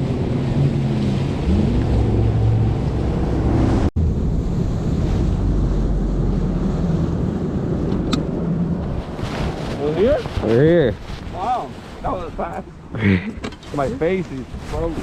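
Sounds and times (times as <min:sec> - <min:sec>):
outboard motor drone: 0:00.0 - 0:08.9
hull rushing on water: 0:00.0 - 0:12.9
wind buffeting microphone: 0:00.0 - 0:12.9.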